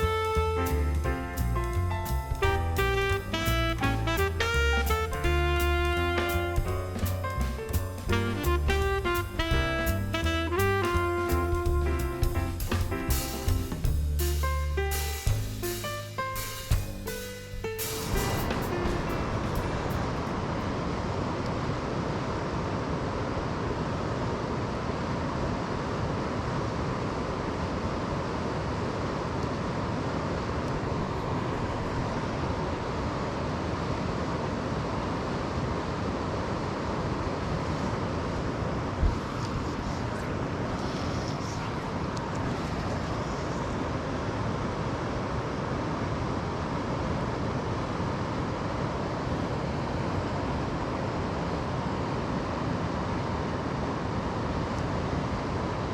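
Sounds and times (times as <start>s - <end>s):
brief low thump: 18.0s - 20.4s.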